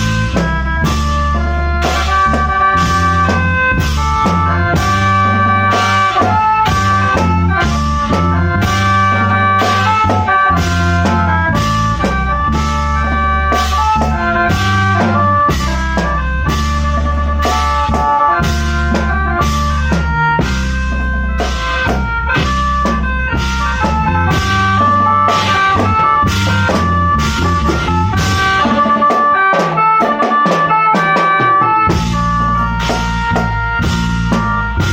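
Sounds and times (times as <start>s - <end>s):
bass line: 0.0s - 34.9s
drum kit beat: 0.0s - 34.9s
sustained melody tones: 0.0s - 34.9s.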